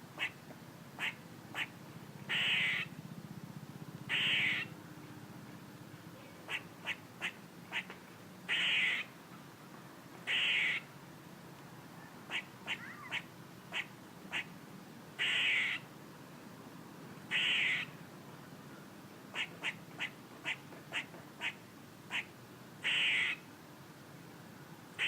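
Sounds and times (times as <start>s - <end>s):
squirrel rasping calls: 0.2s - 0.4s, 1.0s - 2.9s, 4.1s - 4.7s, 6.4s - 7.9s, 8.5s - 9.1s, 10.3s - 10.9s, 12.3s - 14.5s, 15.2s - 15.9s, 17.3s - 17.9s, 19.3s - 23.5s
squirrel barking: 2.3s - 2.9s, 4.1s - 4.7s, 6.4s - 7.9s, 8.5s - 9.1s, 10.3s - 10.9s, 12.3s - 14.5s, 15.2s - 15.8s, 17.3s - 17.9s, 19.3s - 23.4s.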